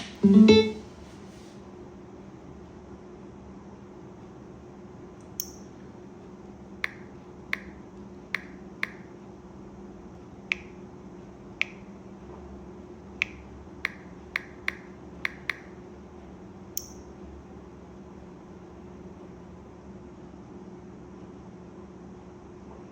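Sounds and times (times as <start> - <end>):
sharp ringing clicks: 5.4 - 5.7, 6.8 - 7.8, 8.4 - 9.1, 13.2 - 15.7, 16.8 - 17.1.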